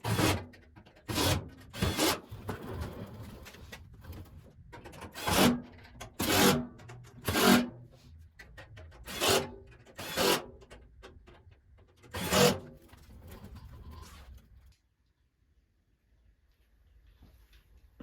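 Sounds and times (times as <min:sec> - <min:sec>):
short rasping scrapes: 0:05.2 - 0:07.9, 0:12.1 - 0:12.8.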